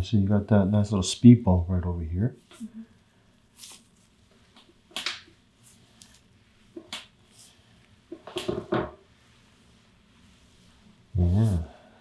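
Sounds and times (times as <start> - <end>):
hands rustling on clothing: 3.4 - 11.7.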